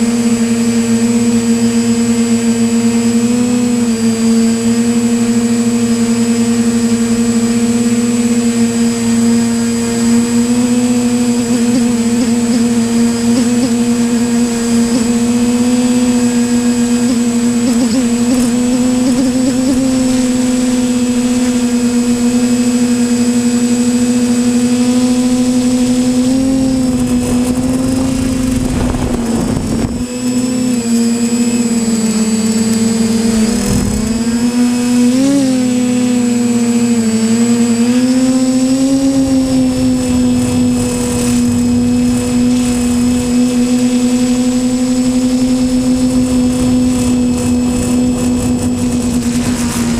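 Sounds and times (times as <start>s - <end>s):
drone propellers buzzing: 0.0s - 49.9s
wind noise rushes: 26.5s - 30.2s, 33.3s - 34.4s, 45.9s - 49.9s.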